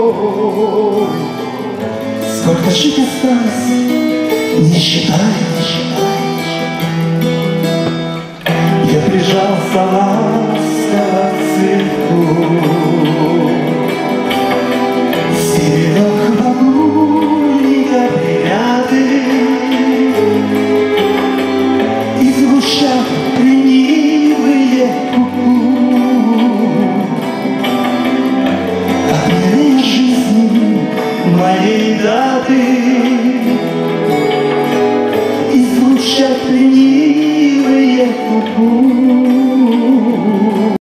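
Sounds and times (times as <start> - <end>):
live band playing: 0.0 - 40.8
person singing: 0.0 - 40.8
wavering melody line: 0.0 - 40.8.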